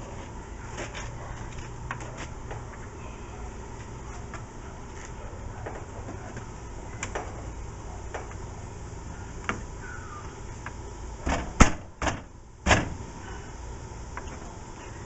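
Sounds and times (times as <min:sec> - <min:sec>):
hard clicks of car door parts: 0:11.2 - 0:13.0.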